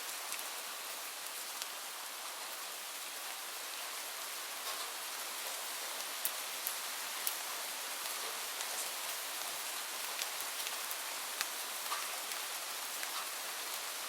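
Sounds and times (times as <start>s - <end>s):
light rain hissing: 0.0s - 14.0s
raindrop ticks: 4.6s - 5.6s, 6.2s - 13.4s.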